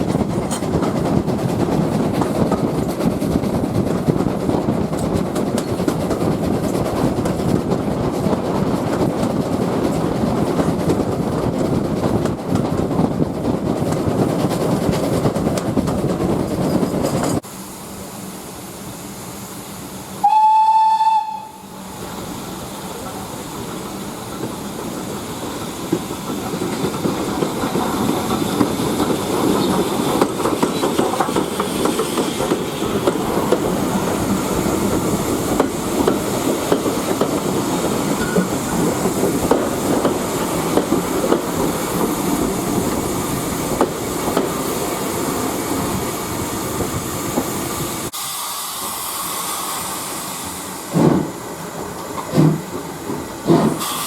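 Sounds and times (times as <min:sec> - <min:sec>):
steam train rumble: 0:00.0 - 0:54.0
steam locomotive puffs: 0:10.8 - 0:45.2, 0:46.2 - 0:54.0
steam hissing: 0:16.7 - 0:54.0
wheels clattering over rail joints: 0:50.9 - 0:53.9.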